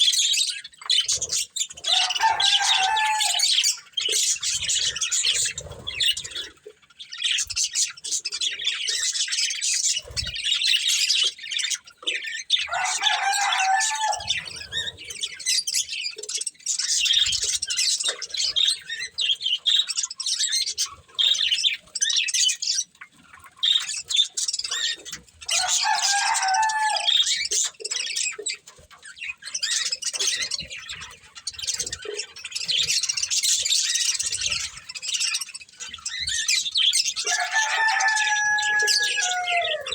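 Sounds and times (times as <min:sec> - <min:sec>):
budgerigars chattering: 0:00.0 - 0:39.9
harsh bird calls: 0:00.0 - 0:39.9.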